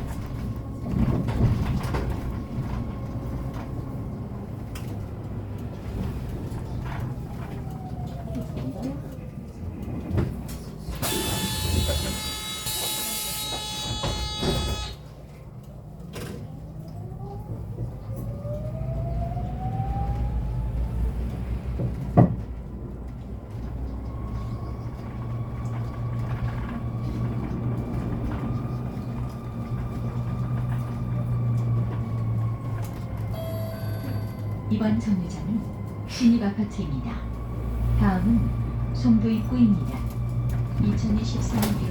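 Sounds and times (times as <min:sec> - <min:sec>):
road rumble: 0:00.0 - 0:41.9
electric bus motor whining: 0:09.9 - 0:15.8, 0:22.7 - 0:41.9
bus door chime: 0:11.0 - 0:15.0, 0:33.3 - 0:34.7.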